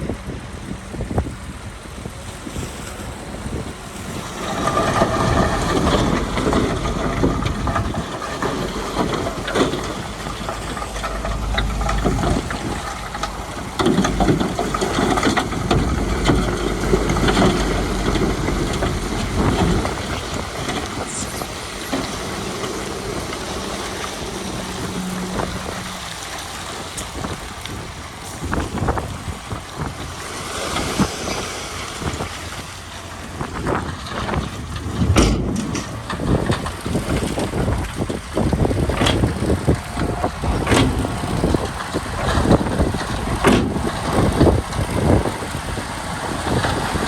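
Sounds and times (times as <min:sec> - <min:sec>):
heavy machinery diesel engine: 0:00.0 - 0:47.0
rock clattering and scraping: 0:03.6 - 0:27.4, 0:33.6 - 0:45.1.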